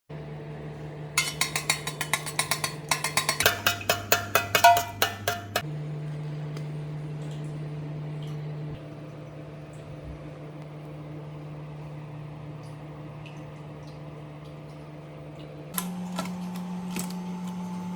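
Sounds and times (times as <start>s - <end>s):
ringing metallic taps: 1.2s - 5.6s.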